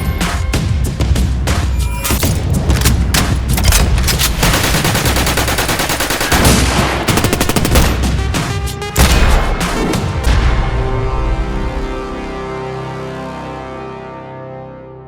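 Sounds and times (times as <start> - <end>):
rapid automatic gunfire: 2.8 - 9.9.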